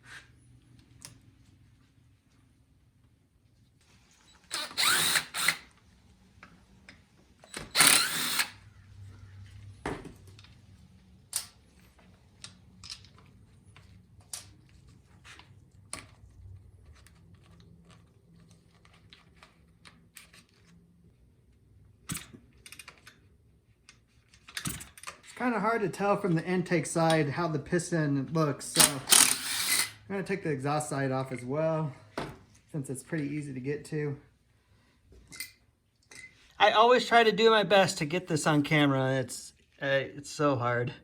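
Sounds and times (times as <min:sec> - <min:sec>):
cordless drill running: 0:04.3 - 0:05.8, 0:07.5 - 0:08.6, 0:28.8 - 0:30.0.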